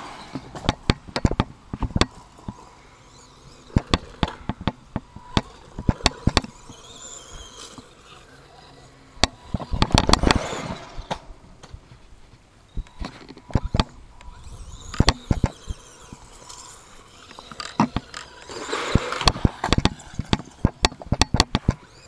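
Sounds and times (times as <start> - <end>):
sharp clacks and knocks: 17.3 - 21.8.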